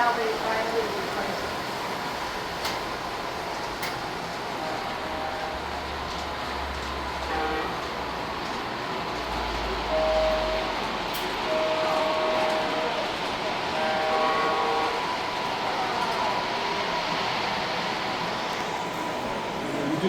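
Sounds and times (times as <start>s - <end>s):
miniature train rumble: 0.0s - 20.0s
train horn tones: 4.5s - 6.0s, 7.2s - 8.2s, 9.8s - 16.5s.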